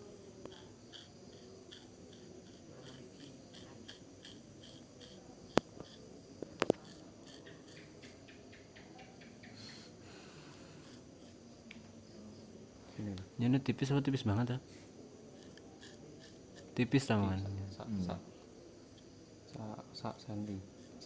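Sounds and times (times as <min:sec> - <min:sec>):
scissors snipping hair: 0:00.4 - 0:06.0.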